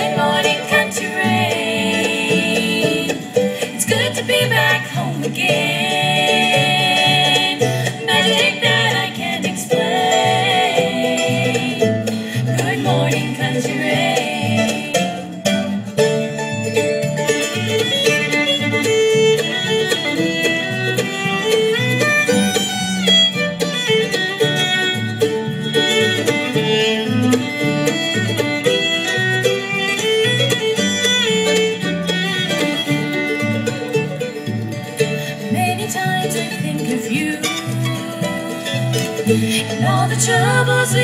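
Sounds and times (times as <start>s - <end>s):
acoustic guitar: 0.0s - 41.0s
banjo: 0.0s - 41.0s
fiddle: 0.0s - 41.0s.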